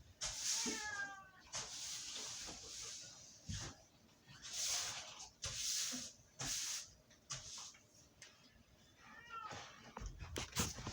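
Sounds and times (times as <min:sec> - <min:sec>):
cat hissing: 0:00.2 - 0:03.0
cat high cry: 0:00.4 - 0:01.6, 0:09.0 - 0:09.8.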